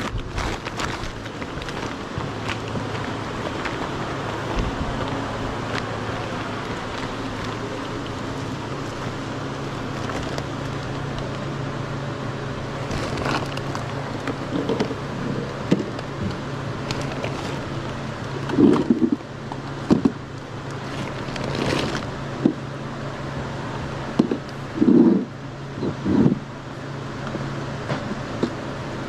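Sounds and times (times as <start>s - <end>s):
clicks and rustles: 0.0s - 11.5s, 12.8s - 22.6s
car engine hum: 0.0s - 29.0s.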